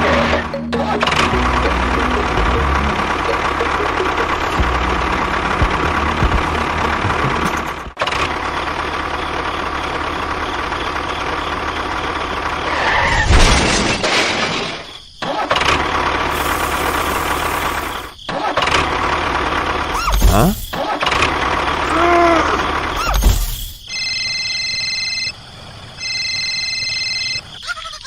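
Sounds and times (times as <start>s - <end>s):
machine motor running: 0.0s - 8.0s.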